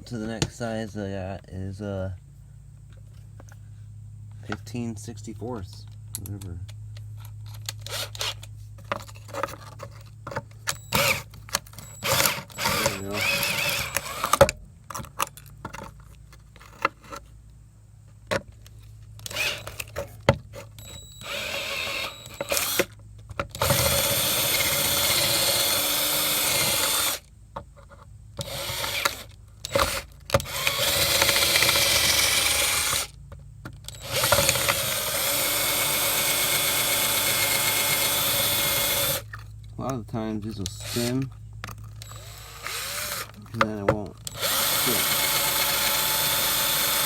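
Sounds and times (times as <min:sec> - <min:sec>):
handling clicks: 0:05.9 - 0:06.8
power drill drilling out rivets: 0:07.7 - 0:08.5, 0:10.7 - 0:15.0, 0:19.2 - 0:27.3, 0:28.4 - 0:33.2, 0:33.8 - 0:39.3, 0:40.7 - 0:43.4, 0:44.2 - 0:47.0.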